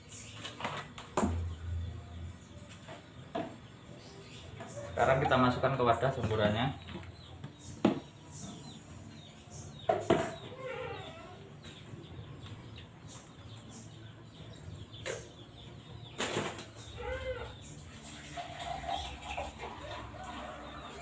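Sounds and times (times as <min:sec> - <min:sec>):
chickens clucking: 0:04.3 - 0:08.8.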